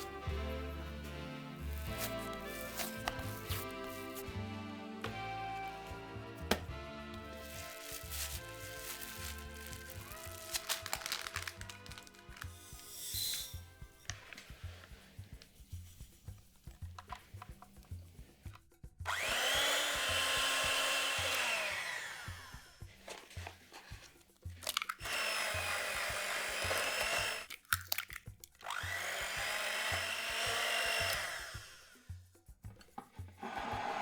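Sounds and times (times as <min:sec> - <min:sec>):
electric mixer motor running: 0:00.0 - 0:14.6, 0:19.1 - 0:23.4, 0:25.0 - 0:27.5, 0:28.6 - 0:32.1, 0:33.3 - 0:34.0
soft music with steady beat: 0:00.0 - 0:33.9.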